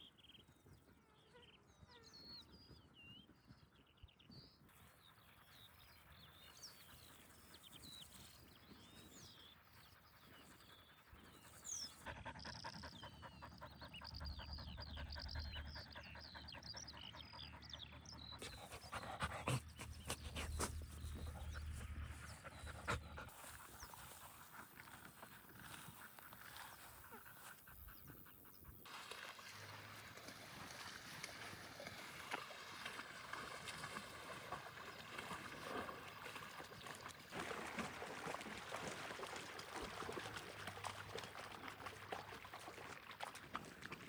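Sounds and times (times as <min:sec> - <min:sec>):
birds chirping: 0:01.2 - 0:28.9
dog panting: 0:11.1 - 0:28.9.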